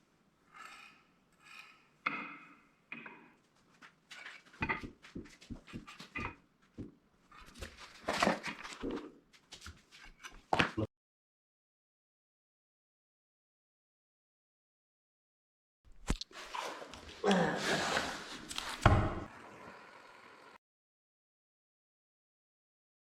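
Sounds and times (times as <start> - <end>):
scraping squeaks: 0.5 - 2.0.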